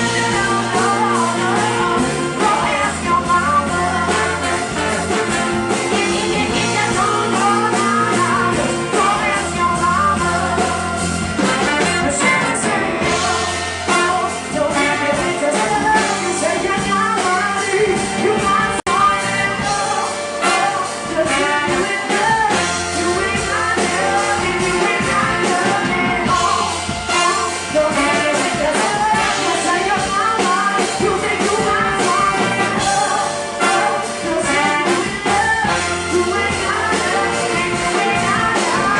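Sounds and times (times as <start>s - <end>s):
horn section: 0.0s - 38.9s
live soul band playing: 0.0s - 38.9s
woman singing lead: 0.0s - 38.9s.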